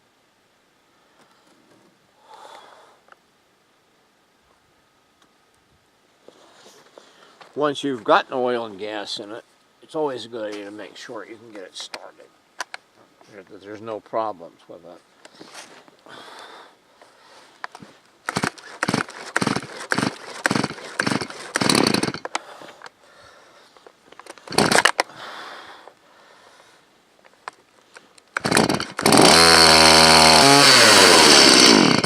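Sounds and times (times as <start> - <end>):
chainsaw engine running: 18.3 - 22.4, 24.4 - 25.0, 28.4 - 32.0
starter cord pulls: 18.3 - 22.4, 24.2 - 25.1, 28.3 - 32.0.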